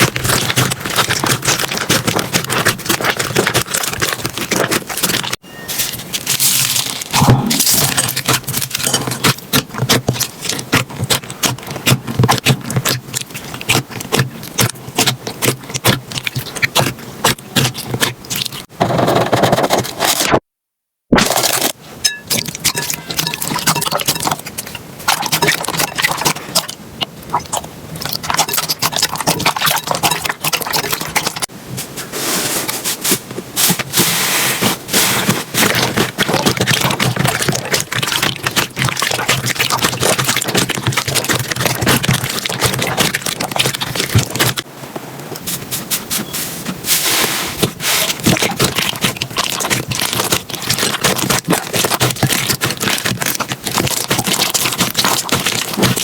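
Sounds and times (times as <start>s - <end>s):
slime squished by hand: 33.0s - 44.7s, 45.5s - 56.0s.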